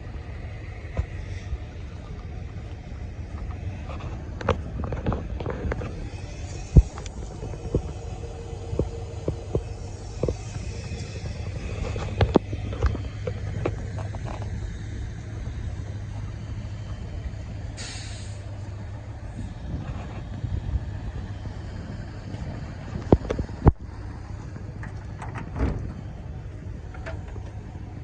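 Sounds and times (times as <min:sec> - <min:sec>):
diesel engine running: 0:00.0 - 0:28.0
short hiss: 0:17.8 - 0:18.5.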